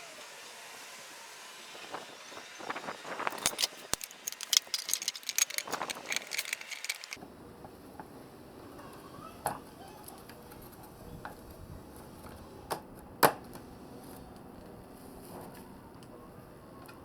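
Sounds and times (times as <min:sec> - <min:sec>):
sharp clicks and knocks: 0:03.3 - 0:07.2.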